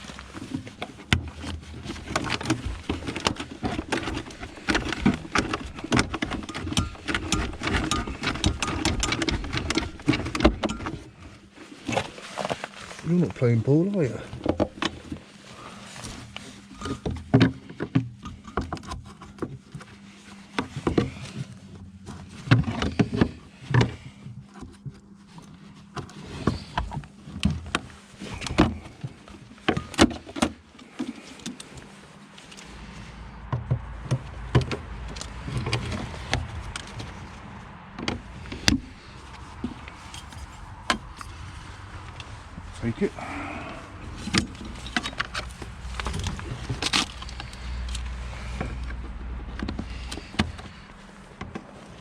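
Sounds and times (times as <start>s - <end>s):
metal parts knocking and clanking: 0.9s - 11.1s, 40.0s - 41.4s, 44.1s - 48.0s
low rumble: 32.6s - 50.8s.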